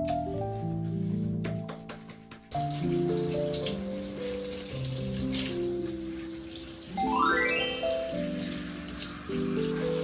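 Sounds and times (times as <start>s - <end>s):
bright bell-like rising run: 7.0s - 8.4s.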